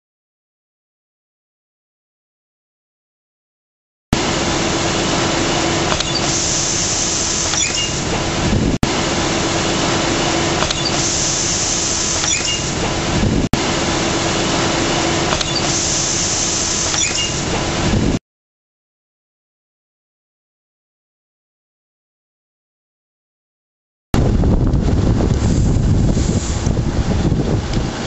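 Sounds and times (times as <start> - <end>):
machinery humming: 4.2 - 18.2, 24.2 - 28.0.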